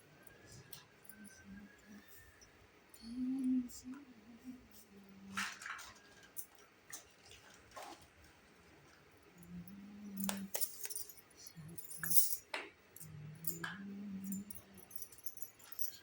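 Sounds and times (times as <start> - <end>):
small toy parts clinking: 9.5 - 16.0.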